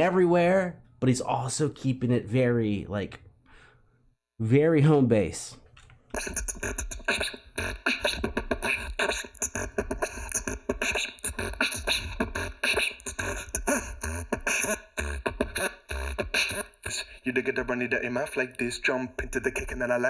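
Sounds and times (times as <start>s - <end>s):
person beatboxing: 6.1s - 20.0s.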